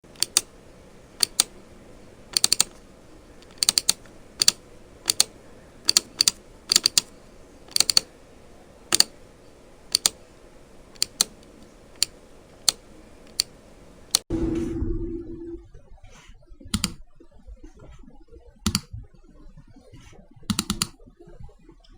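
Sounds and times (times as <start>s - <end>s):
faint steady hiss: 0.0s - 14.3s
low hum: 0.0s - 18.1s
computer mouse clicks: 0.1s - 0.5s, 1.2s - 1.6s, 2.3s - 8.1s, 8.9s - 9.2s, 9.9s - 10.2s, 10.9s - 14.2s, 16.7s - 17.0s, 18.7s - 19.0s, 20.5s - 21.0s.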